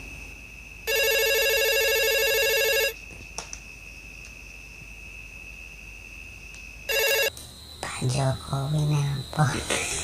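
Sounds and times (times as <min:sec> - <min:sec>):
faint high-pitched whine: 0:00.0 - 0:10.0
telephone ringing: 0:00.9 - 0:03.0, 0:06.9 - 0:07.3.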